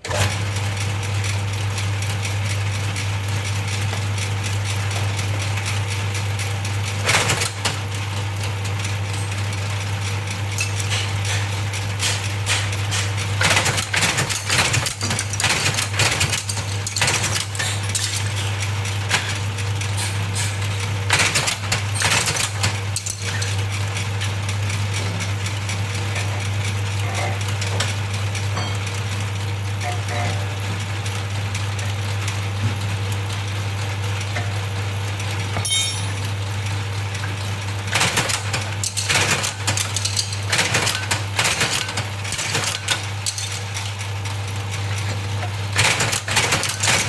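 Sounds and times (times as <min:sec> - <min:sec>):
machine motor hum: 0:00.0 - 0:38.0
rollers rattling and clattering: 0:08.8 - 0:28.0, 0:38.4 - 0:44.1.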